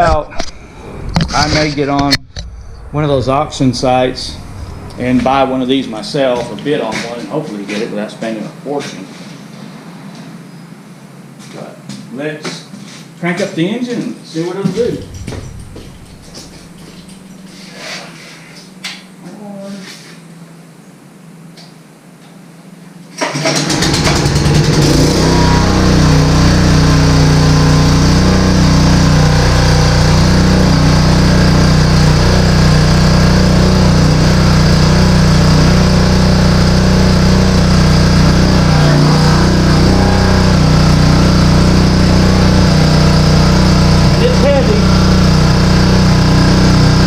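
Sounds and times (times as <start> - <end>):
small gasoline engine running: 23.2 - 47.0.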